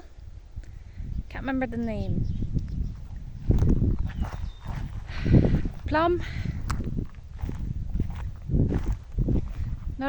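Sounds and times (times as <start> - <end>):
wind on microphone: 0.0 - 10.0
footsteps walking: 2.9 - 10.0.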